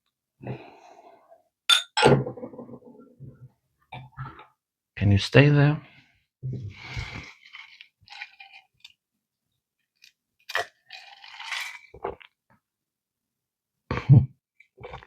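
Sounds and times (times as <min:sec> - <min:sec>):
glass sounds: 0:01.7 - 0:02.1
sipping and swallowing: 0:10.5 - 0:12.4, 0:14.8 - 0:15.0.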